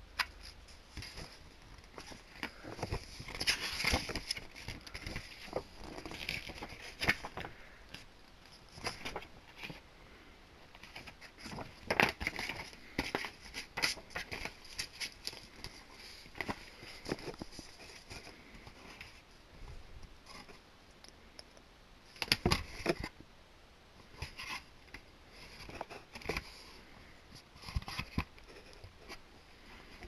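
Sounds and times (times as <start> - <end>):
packaging rustling: 0.2 - 9.8, 10.7 - 19.2.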